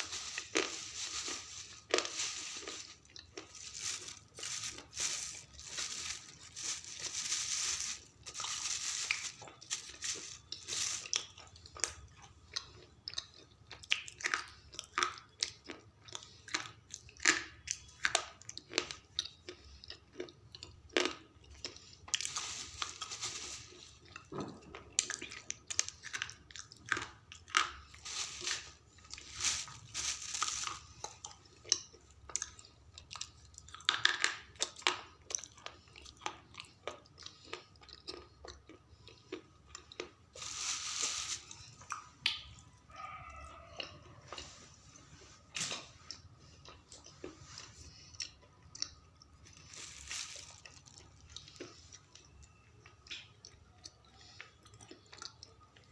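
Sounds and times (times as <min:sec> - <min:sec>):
slate pencils crunching: 0:00.0 - 0:12.0, 0:21.0 - 0:24.3, 0:26.0 - 0:32.6, 0:39.8 - 0:41.8, 0:49.5 - 0:51.8.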